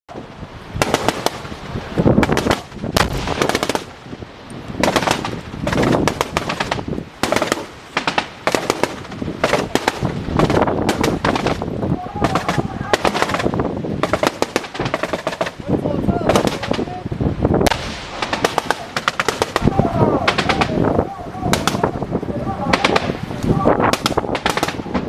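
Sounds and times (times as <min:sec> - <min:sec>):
wind rumbling on microphone: 0:00.1 - 0:25.0
gunfire bursts: 0:00.8 - 0:01.5, 0:02.2 - 0:03.9, 0:04.8 - 0:11.6, 0:12.2 - 0:15.6, 0:16.3 - 0:16.8, 0:17.6 - 0:20.8, 0:23.9 - 0:24.8.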